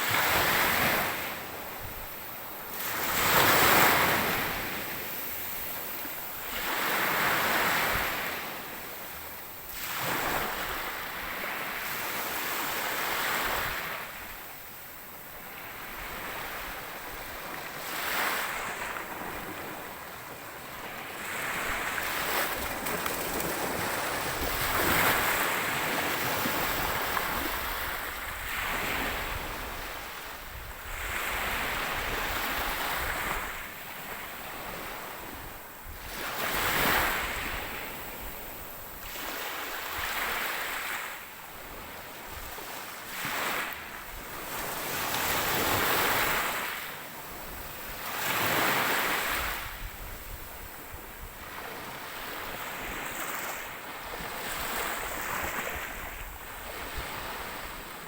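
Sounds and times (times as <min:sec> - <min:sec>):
sea waves breaking ashore: 0:15.4 - 0:30.2.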